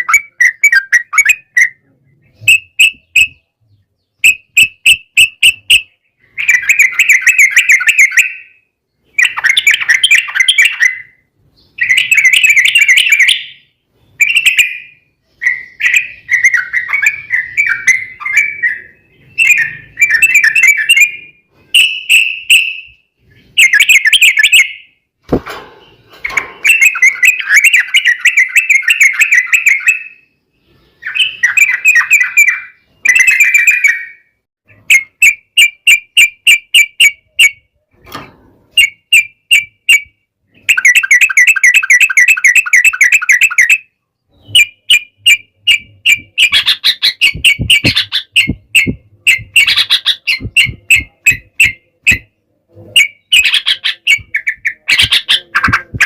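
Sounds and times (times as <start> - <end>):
bird singing chattering phrases: 0.0 - 25.0, 38.8 - 56.0
sharp knock: 25.3 - 26.6, 47.3 - 49.8, 50.4 - 52.3.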